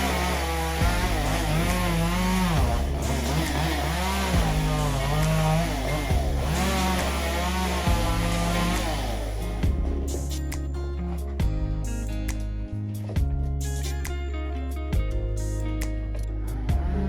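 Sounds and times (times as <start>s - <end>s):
chainsaw revving while cutting: 0.0s - 9.7s
background music: 0.0s - 17.0s.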